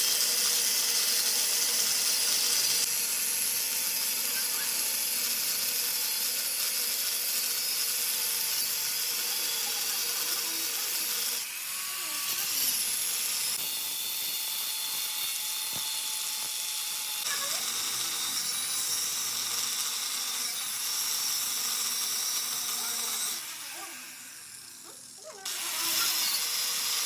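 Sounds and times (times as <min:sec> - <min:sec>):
small power tool on metal: 0:00.0 - 0:27.0.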